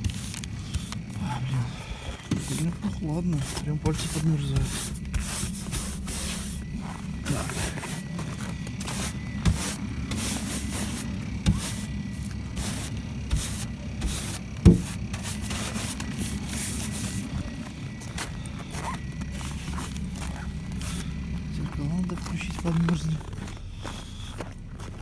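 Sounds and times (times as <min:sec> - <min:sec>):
car engine idling: 0:00.0 - 0:25.0
rough rubbing strokes: 0:02.3 - 0:25.0.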